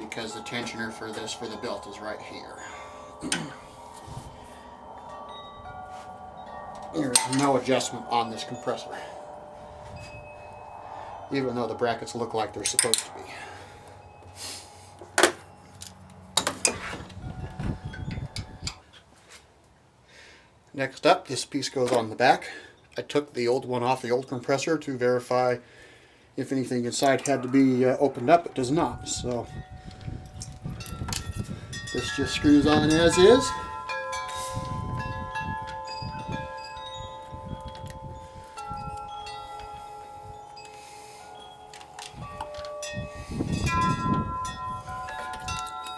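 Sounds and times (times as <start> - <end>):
low handling rumble: 0.0 - 18.8
metal tools clinking: 0.0 - 18.8, 35.6 - 45.9
wind chimes ringing: 0.0 - 19.4, 24.8 - 45.9.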